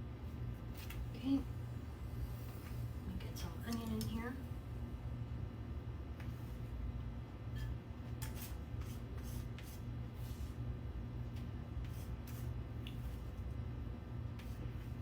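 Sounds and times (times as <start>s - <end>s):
steady low hum: 0.0s - 15.0s
utensil scraping chopped onion: 7.6s - 10.6s, 11.8s - 13.3s.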